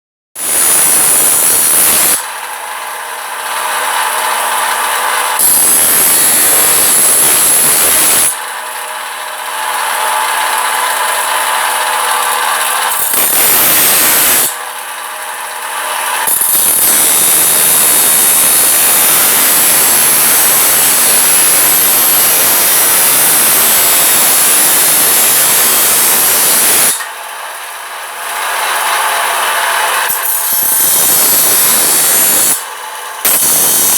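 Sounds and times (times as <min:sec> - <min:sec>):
angle grinder grinding steel: 0:00.4 - 0:02.4, 0:03.9 - 0:08.4, 0:12.3 - 0:14.6, 0:15.8 - 0:27.2, 0:28.2 - 0:33.9
power tool whining freely: 0:00.4 - 0:08.6, 0:09.4 - 0:33.9.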